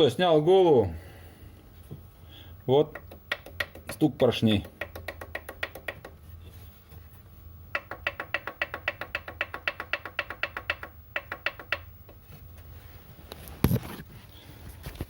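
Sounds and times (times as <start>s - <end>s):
engine piston knocking: 3.0s - 4.0s, 4.6s - 6.2s, 7.7s - 11.9s.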